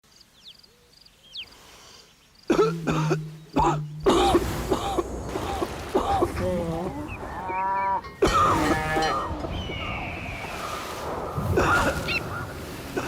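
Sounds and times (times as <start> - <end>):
man coughing and clearing throat: 2.5 - 6.4, 8.2 - 8.6.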